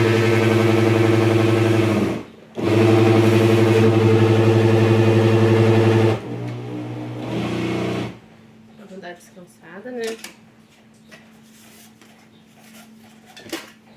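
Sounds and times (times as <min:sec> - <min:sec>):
blender motor running: 0:00.0 - 0:08.2.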